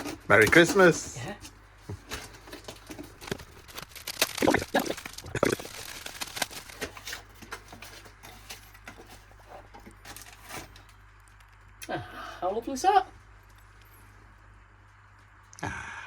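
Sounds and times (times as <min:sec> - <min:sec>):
packaging rustling and crackling: 0:02.0 - 0:11.8.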